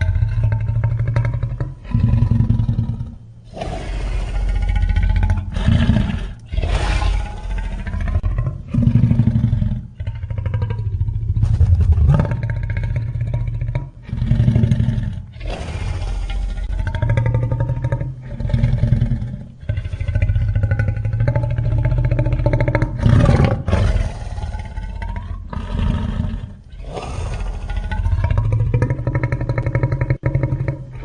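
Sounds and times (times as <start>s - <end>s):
creature growls: 22.9s - 31.0s.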